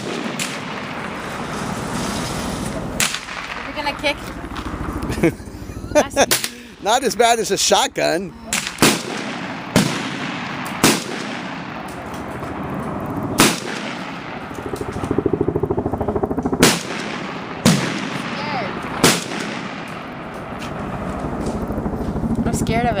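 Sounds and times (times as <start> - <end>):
rifle shots with echo: 0.0 - 1.7, 3.0 - 4.9, 8.5 - 15.3, 16.6 - 21.0.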